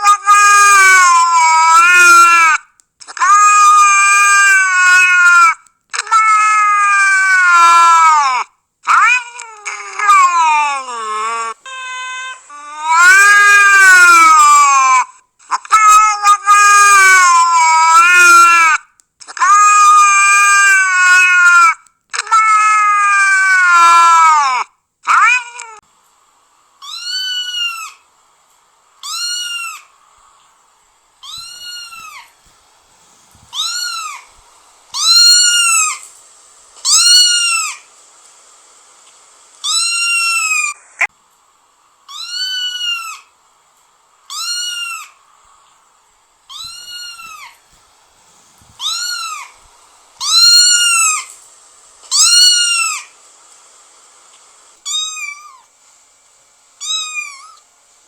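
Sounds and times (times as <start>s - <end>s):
cat meowing: 0.0s - 15.1s, 15.7s - 25.8s, 26.8s - 28.0s, 29.0s - 29.9s, 31.2s - 32.5s, 33.1s - 36.1s, 36.8s - 37.9s, 39.6s - 41.1s, 42.1s - 43.3s, 44.3s - 45.2s, 46.5s - 47.7s, 48.6s - 51.4s, 52.1s - 53.1s, 54.8s - 55.7s, 56.8s - 57.6s.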